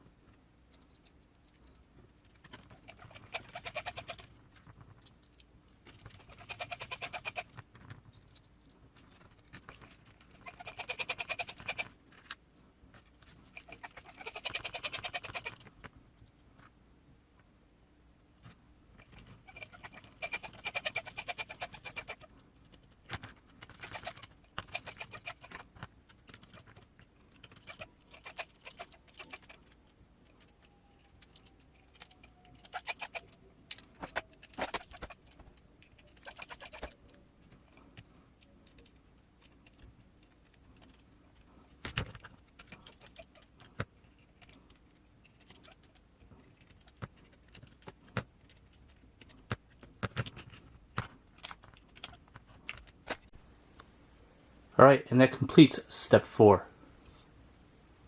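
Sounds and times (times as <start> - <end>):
metal screws and tools clicking: 0.7 - 4.2.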